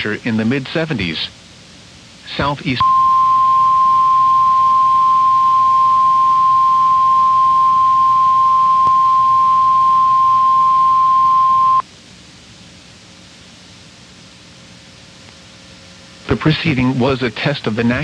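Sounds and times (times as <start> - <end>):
low receiver hiss: 0.0 - 18.0
steady warning alarm tone: 2.8 - 11.8.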